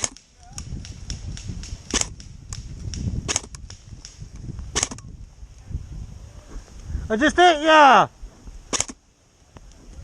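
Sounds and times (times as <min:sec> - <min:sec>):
airsoft rifle sharp cracks: 0:00.0 - 0:05.0, 0:08.7 - 0:09.0
faint airsoft shots popping: 0:00.0 - 0:05.1, 0:08.7 - 0:09.0.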